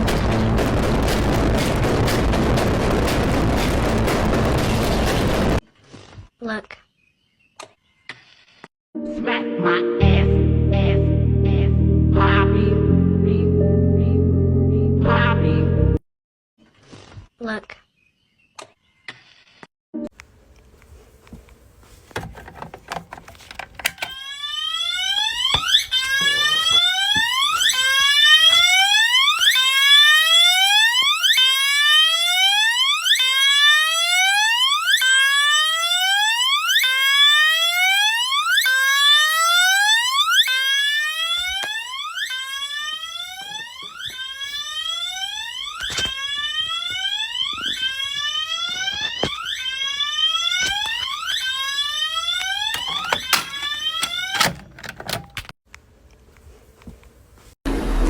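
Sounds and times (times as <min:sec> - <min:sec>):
fire alarm whoop tone: 0:24.1 - 0:54.4.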